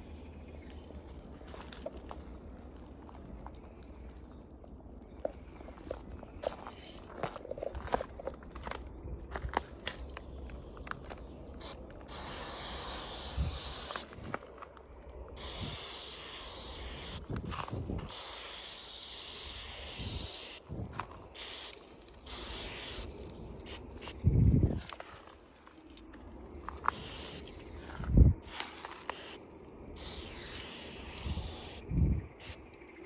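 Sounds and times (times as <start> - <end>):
spray paint can hissing: 11.6 - 14.2, 15.4 - 20.6, 21.4 - 24.2, 26.9 - 27.6, 28.4 - 29.4, 30.0 - 31.8, 32.4 - 32.6.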